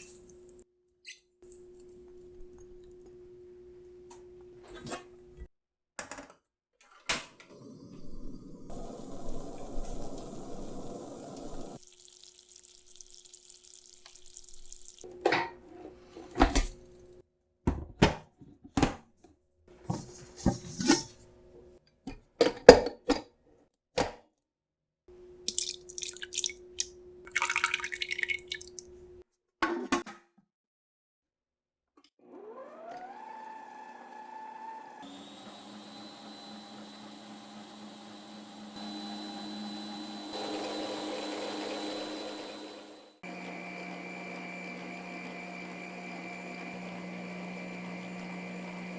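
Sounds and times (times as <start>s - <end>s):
kitchen motor whirring: 7.5s - 11.8s, 32.2s - 48.9s
liquid pouring: 8.8s - 15.1s, 25.5s - 29.0s.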